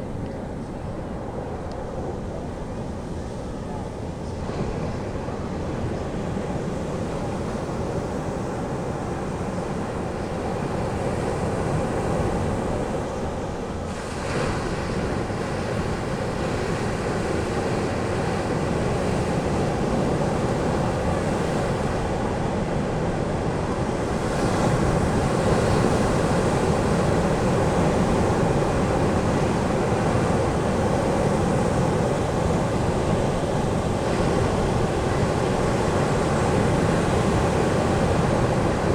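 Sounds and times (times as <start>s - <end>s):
ocean surf breaking: 13.9s - 38.9s.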